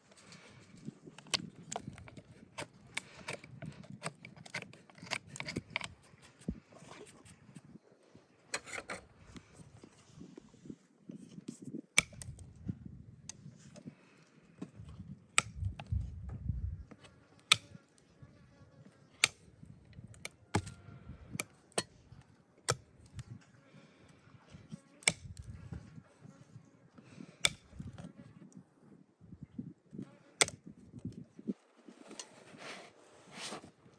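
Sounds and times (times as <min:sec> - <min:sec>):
hoof nippers snapping: 0:00.4 - 0:06.6, 0:17.0 - 0:18.0, 0:19.2 - 0:21.9.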